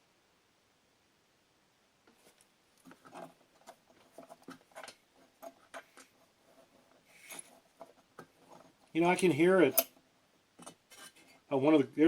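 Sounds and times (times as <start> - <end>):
tools and metal parts clicking: 9.6 - 10.0.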